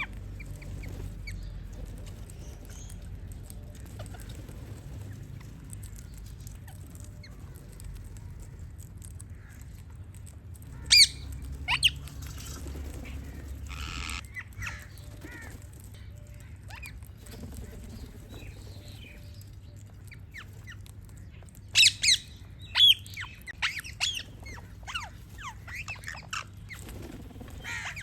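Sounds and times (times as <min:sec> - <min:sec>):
parrots squawking: 0:00.0 - 0:01.0, 0:10.7 - 0:15.7, 0:21.7 - 0:26.8, 0:27.4 - 0:28.0
steady low rumble: 0:00.0 - 0:28.0.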